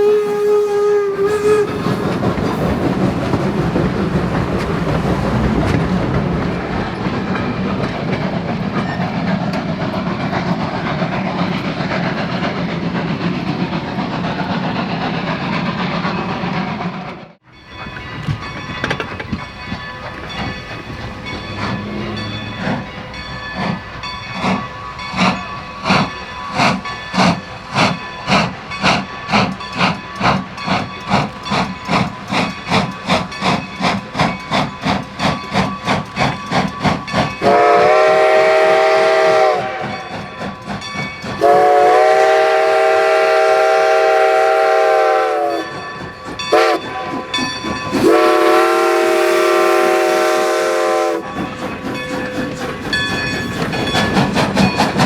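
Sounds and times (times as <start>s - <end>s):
steam whistle: 0.0s - 2.2s, 37.4s - 40.0s, 41.4s - 45.7s, 46.5s - 47.2s, 47.9s - 51.3s
steam locomotive exhaust beats: 0.0s - 55.0s.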